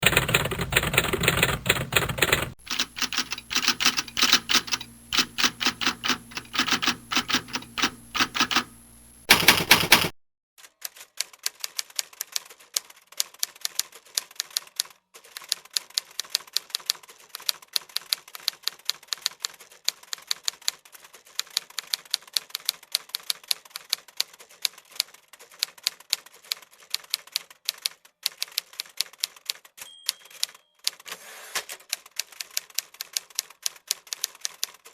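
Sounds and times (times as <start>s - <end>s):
typewriter keys clicking: 0.0s - 10.1s.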